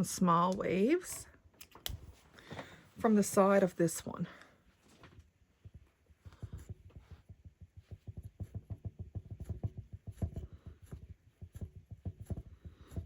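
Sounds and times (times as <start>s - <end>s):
rug hook pulling wool loops: 5.2s - 13.0s.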